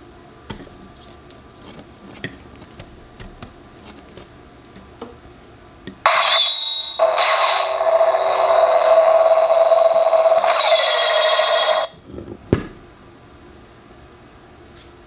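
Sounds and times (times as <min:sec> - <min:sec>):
beam saber buzzing hum: 0:06.0 - 0:12.0.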